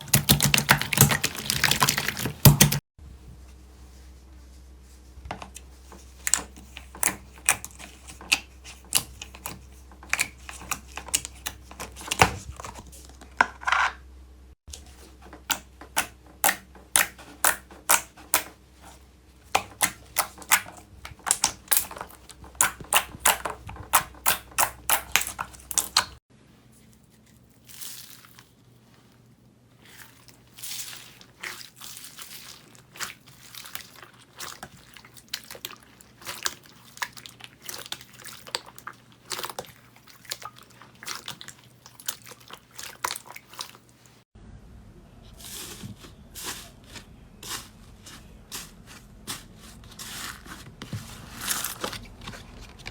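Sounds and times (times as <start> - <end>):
slime crackling: 0.0 - 2.8.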